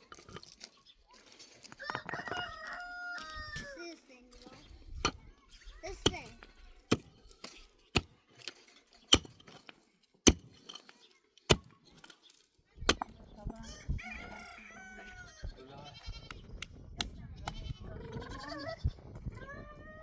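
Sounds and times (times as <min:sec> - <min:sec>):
rooster crowing: 0:01.8 - 0:03.7, 0:13.7 - 0:15.5.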